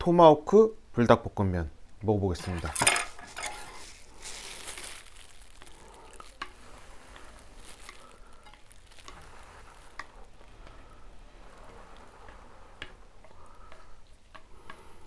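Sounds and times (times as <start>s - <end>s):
food sizzling faintly: 2.3s - 15.0s
utensils clicking: 2.4s - 4.8s.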